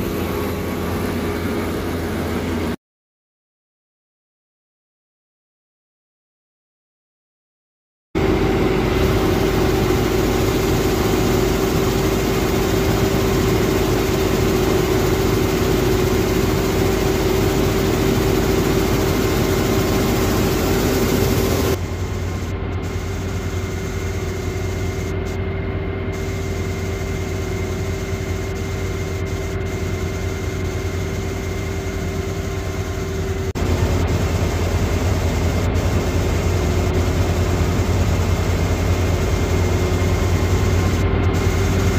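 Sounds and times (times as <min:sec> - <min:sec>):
combine harvester mechanical drone: 0:00.0 - 0:02.8, 0:08.2 - 0:41.9.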